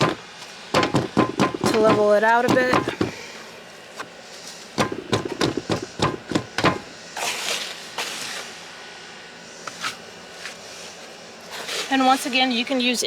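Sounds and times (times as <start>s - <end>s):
mortar form knocking on hard surface: 0.8s - 3.2s, 4.8s - 6.8s
short scraping: 7.2s - 8.6s.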